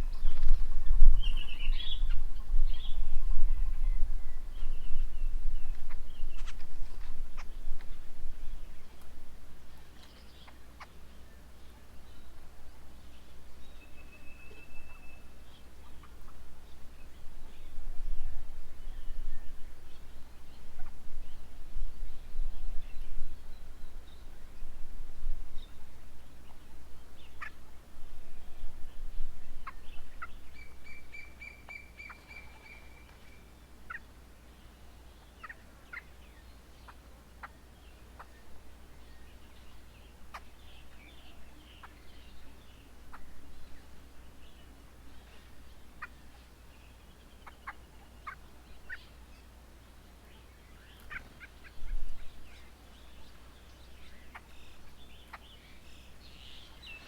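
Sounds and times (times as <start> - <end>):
bird chirps: 0.0 - 7.9, 13.0 - 16.2, 29.4 - 49.5, 50.2 - 57.0.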